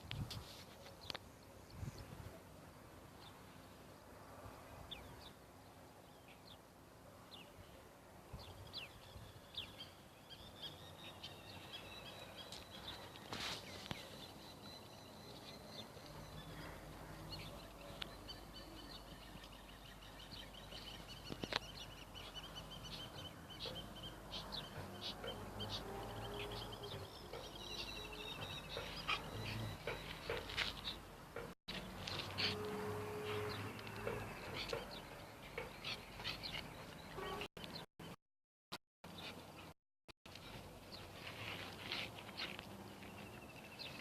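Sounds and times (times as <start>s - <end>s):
birds chirping: 7.3s - 38.2s, 40.3s - 44.0s.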